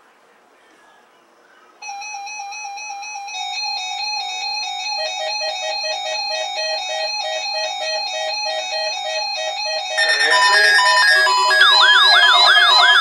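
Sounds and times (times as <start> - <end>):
electronic chime melody: 4.9 - 13.0
steady electronic tone: 10.0 - 13.0.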